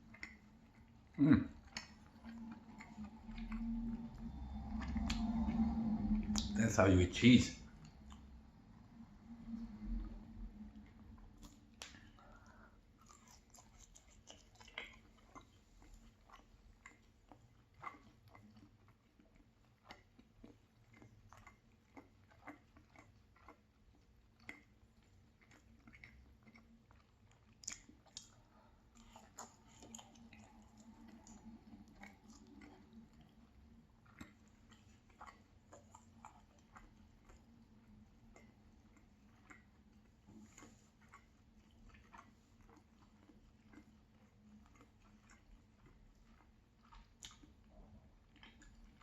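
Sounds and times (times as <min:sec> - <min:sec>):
chewing food: 0:00.0 - 0:49.0
mouth clicks and smacks: 0:00.1 - 0:06.6, 0:11.3 - 0:18.7, 0:25.4 - 0:28.4, 0:44.7 - 0:47.6.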